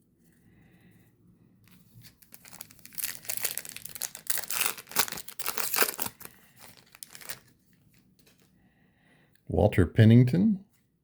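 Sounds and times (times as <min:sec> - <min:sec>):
foil wrapper tearing and crinkling: 0:02.0 - 0:07.5.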